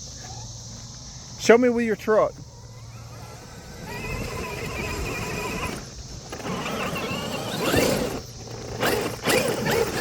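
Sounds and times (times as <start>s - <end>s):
rc truck electric motor whining: 2.5s - 10.0s.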